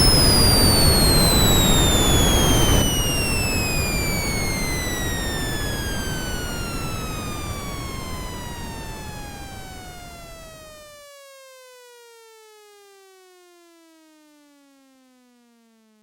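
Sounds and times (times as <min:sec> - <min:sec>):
whining tone gliding down: 0:00.0 - 0:10.9.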